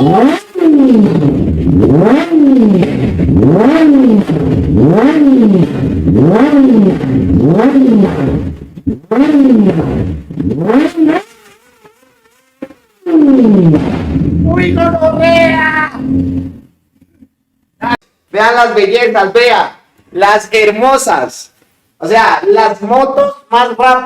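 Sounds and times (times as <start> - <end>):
motorcycle engine revving: 0.0 - 17.2.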